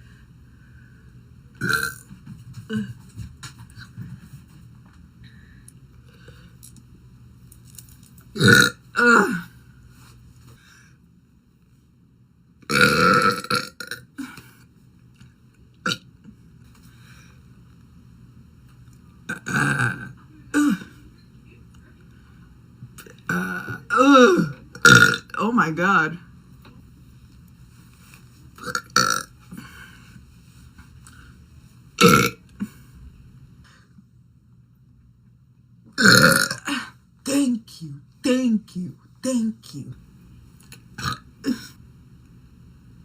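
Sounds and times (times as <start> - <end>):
woman burping: 1.6 - 2.0, 8.4 - 9.5, 12.7 - 14.4, 19.3 - 21.0, 23.3 - 25.3, 28.6 - 29.3, 32.0 - 32.4, 36.0 - 37.0, 41.0 - 41.8
girl burping: 8.4 - 9.5, 19.3 - 20.9, 32.0 - 32.4, 36.0 - 36.9, 41.0 - 41.7.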